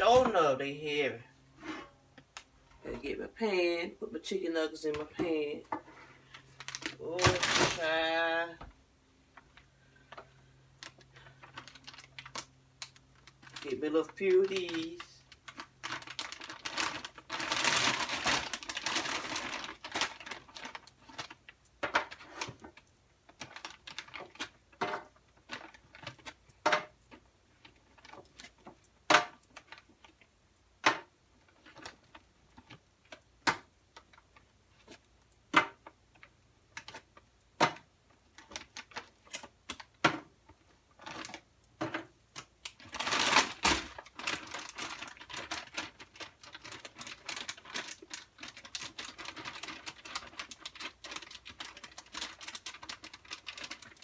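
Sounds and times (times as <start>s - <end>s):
plastic bag rustling: 4.8s - 8.6s, 9.4s - 30.2s, 40.9s - 41.9s, 42.5s - 54.0s.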